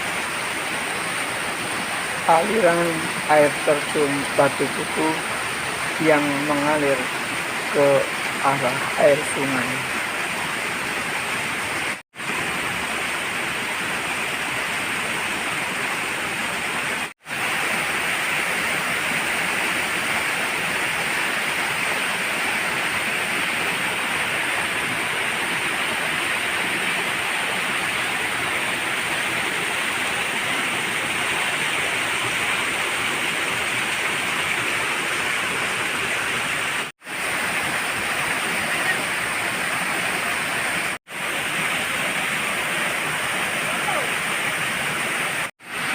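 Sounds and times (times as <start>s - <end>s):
waterfall roaring: 0.0s - 45.9s.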